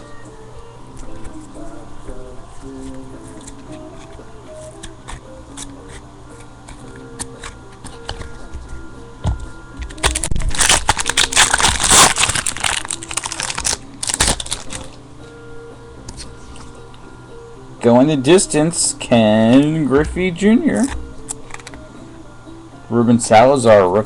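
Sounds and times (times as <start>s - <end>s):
background music: 0.0s - 24.0s
card pack wrapper crinkling and tearing: 9.8s - 15.0s, 20.8s - 21.8s.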